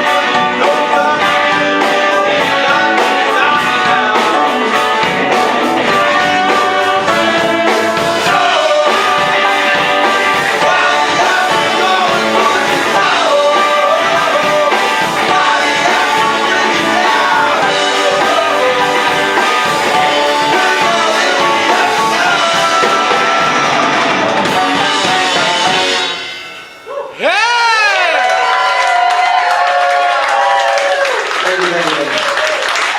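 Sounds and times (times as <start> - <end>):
person singing: 0.0 - 25.9
live band with horn section: 0.0 - 28.1.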